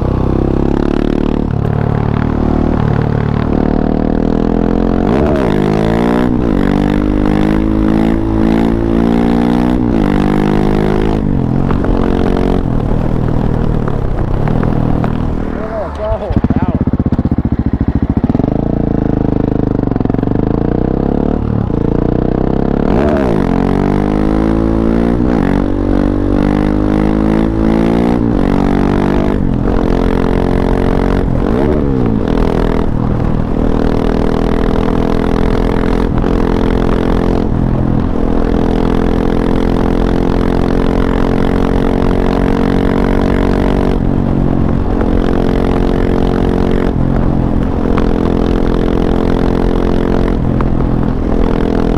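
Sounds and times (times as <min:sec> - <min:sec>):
motorcycle engine revving: 0:00.0 - 0:51.9.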